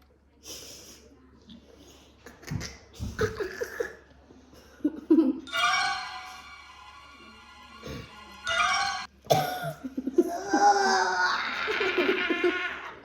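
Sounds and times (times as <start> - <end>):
children giggling and laughing: 4.6 - 5.6, 9.6 - 13.0.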